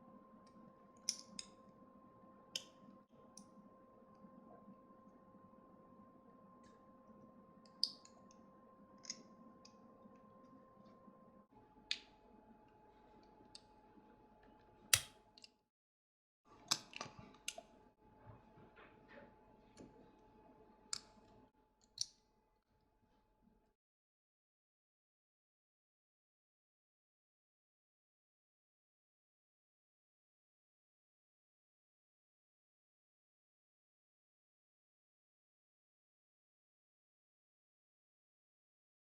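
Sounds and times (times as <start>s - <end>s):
faint steady hum: 0.0s - 15.5s.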